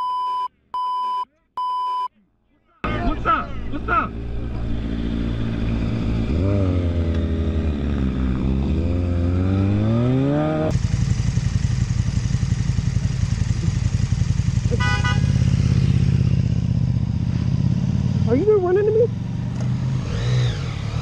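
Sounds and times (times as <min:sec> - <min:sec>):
motorcycle engine revving: 0:02.9 - 0:21.0
motorcycle engine idling: 0:10.7 - 0:19.7
car horn honk: 0:14.6 - 0:15.6.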